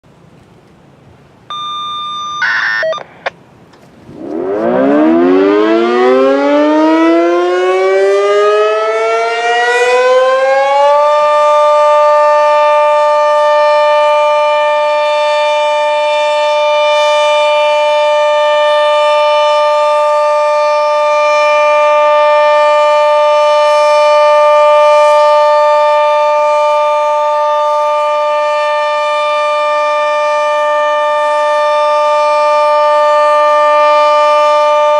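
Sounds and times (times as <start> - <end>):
short tone: 1.5 - 3.1
two-tone warning siren: 1.5 - 3.1, 4.0 - 34.9.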